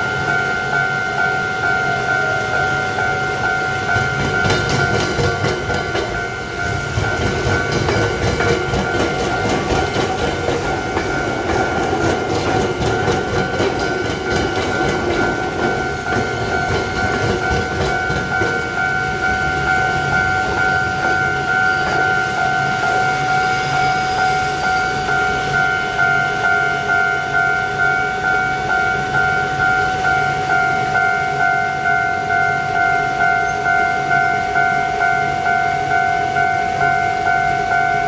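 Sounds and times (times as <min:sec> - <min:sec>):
level crossing alarm ringing: 0:00.0 - 0:38.0
train wheels clattering: 0:03.2 - 0:26.2.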